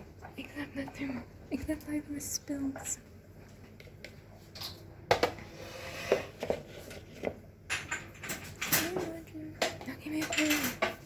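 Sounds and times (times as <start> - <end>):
utensil scraping a bowl: 5.4 - 7.4
utensils knocking against a bowl: 7.7 - 11.0.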